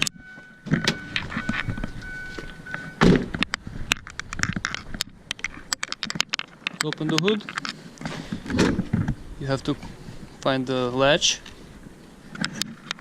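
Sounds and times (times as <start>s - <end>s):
heavy thunk from car body: 3.0s - 3.4s, 8.5s - 9.1s
light clicks and knocks: 3.3s - 9.2s.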